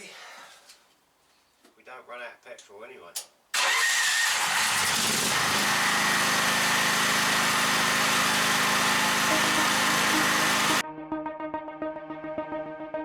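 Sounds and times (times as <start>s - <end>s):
petrol generator engine running: 3.6s - 10.8s.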